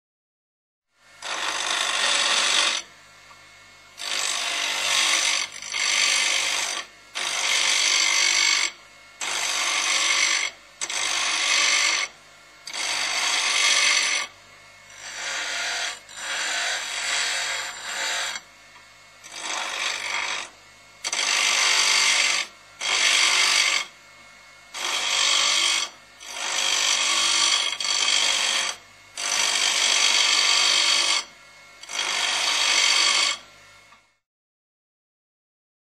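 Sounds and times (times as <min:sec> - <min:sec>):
grinder running in bursts: 0:01.0 - 0:34.1.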